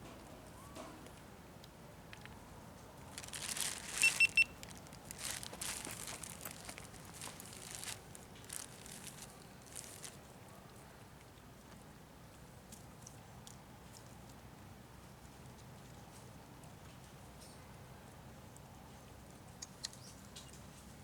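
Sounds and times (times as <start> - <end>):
crinkling and rustling of food: 0.1 - 11.9.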